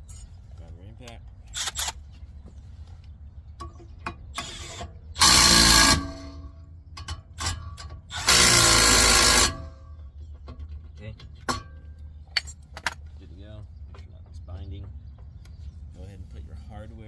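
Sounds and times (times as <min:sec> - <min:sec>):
impact wrench hammering: 0:04.4 - 0:09.8.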